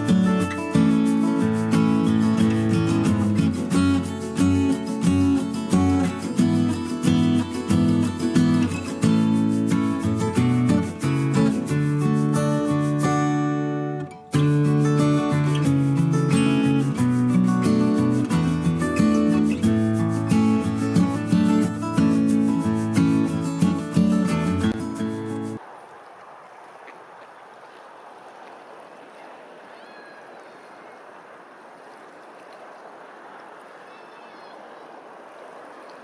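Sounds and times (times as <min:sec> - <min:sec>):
guitar strummed and plucked: 0:00.0 - 0:25.6
rushing water: 0:00.0 - 0:36.0
faint high chirps: 0:29.7 - 0:31.1.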